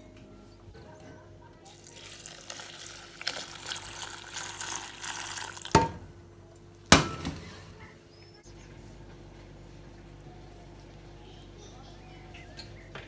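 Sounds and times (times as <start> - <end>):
water running: 1.7 - 7.8.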